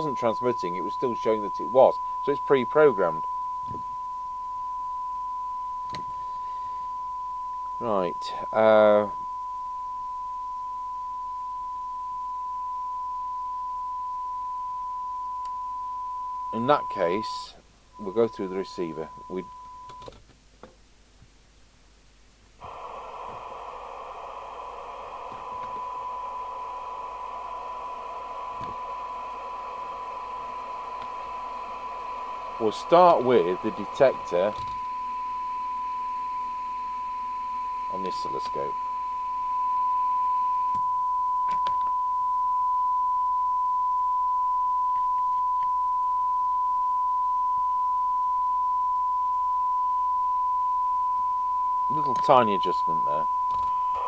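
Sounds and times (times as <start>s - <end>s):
radio hiss: 0.0s - 3.8s, 7.8s - 9.2s, 16.5s - 19.5s, 22.6s - 39.7s, 51.8s - 54.0s
radio test tone: 0.0s - 20.1s, 22.6s - 54.0s.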